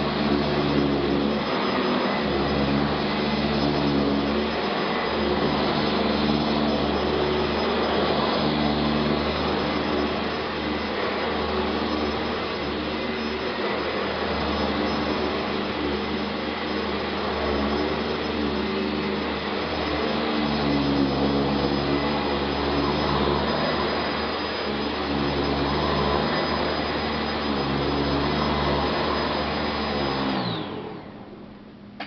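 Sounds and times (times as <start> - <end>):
upright vacuum cleaner running: 0.0 - 32.0.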